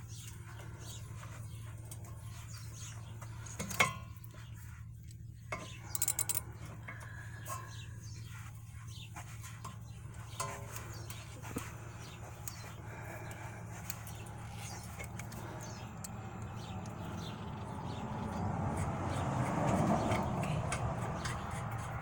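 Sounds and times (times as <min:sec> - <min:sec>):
steady low hum: 0:00.0 - 0:22.0
ratchet clicks: 0:05.8 - 0:06.5.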